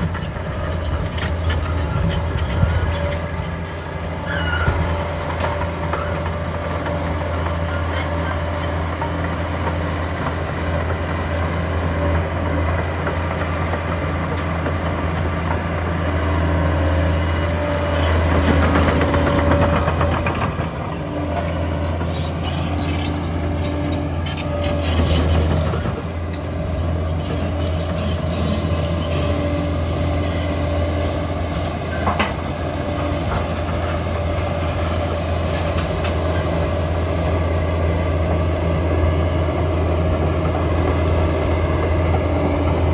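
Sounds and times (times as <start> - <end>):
dozer diesel engine droning: 0.0 - 42.9
steel tracks clanking and squealing: 0.0 - 42.9.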